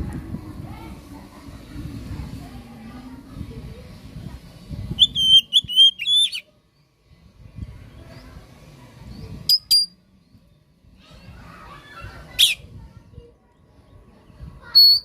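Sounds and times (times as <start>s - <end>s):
bird whistled song: 5.0s - 6.5s, 9.5s - 10.0s, 14.8s - 15.0s.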